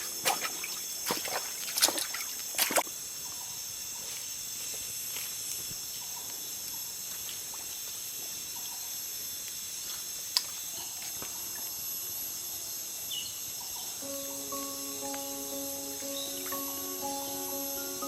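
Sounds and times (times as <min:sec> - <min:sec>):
insects chorus: 0:00.0 - 0:18.0.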